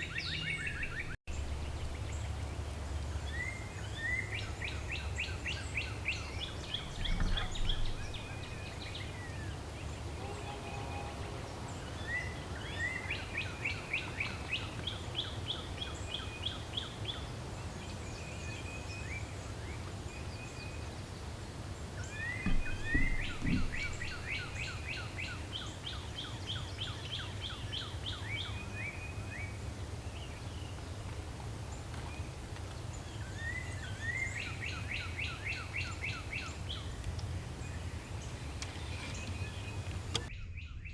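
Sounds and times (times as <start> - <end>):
songbirds singing: 0.0 - 40.9
low background rumble: 0.6 - 3.6, 6.5 - 9.9, 22.5 - 25.2
dull low thumps: 6.7 - 9.0, 22.4 - 25.0.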